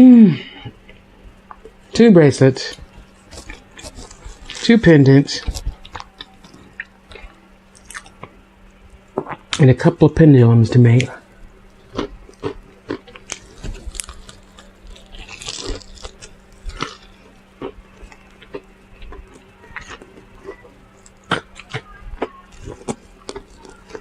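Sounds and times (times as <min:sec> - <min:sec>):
chewing and mouth smacking: 0:00.7 - 0:01.8, 0:02.7 - 0:04.7, 0:05.4 - 0:09.6, 0:11.0 - 0:24.0
crunchy bite: 0:02.8 - 0:04.7, 0:05.4 - 0:08.4, 0:11.1 - 0:24.0.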